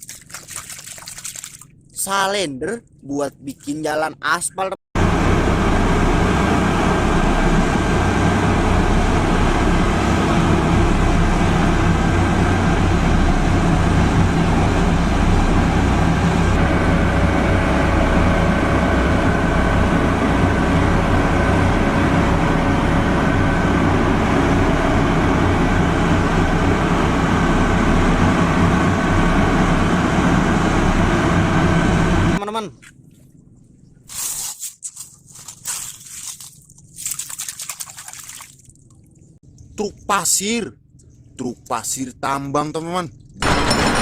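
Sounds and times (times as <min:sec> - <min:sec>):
vehicle engine drone: 0:05.0 - 0:32.4.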